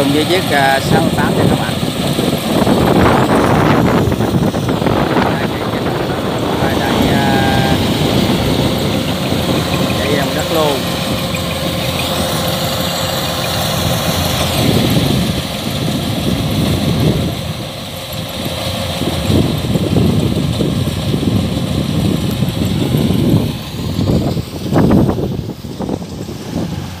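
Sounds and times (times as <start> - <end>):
combine harvester engine drone: 0.0 - 27.0
steady whine: 0.0 - 27.0.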